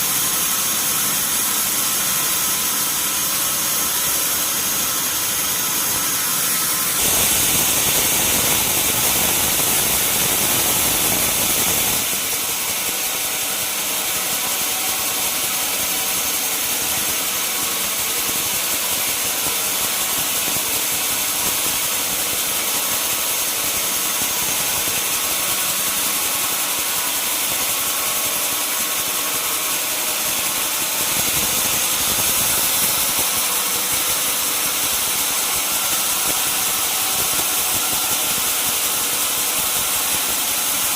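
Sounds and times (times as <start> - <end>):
sawmill saw whining: 0.0 - 40.9.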